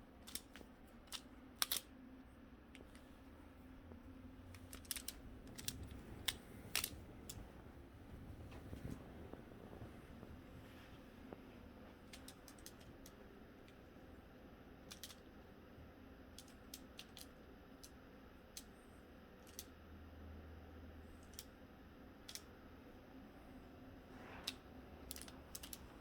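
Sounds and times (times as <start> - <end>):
puzzle layers clicking: 24.5 - 25.8.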